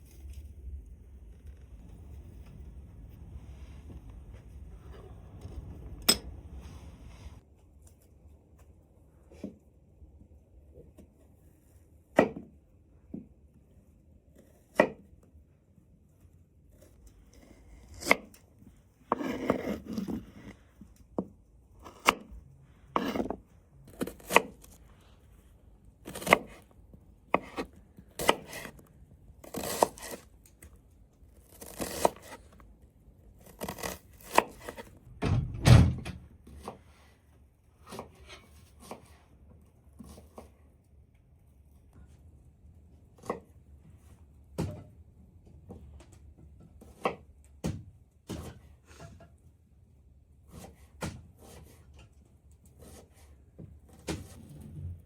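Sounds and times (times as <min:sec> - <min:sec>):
knocks and thuds of handwork: 0:35.1 - 0:36.3, 0:47.6 - 0:48.7.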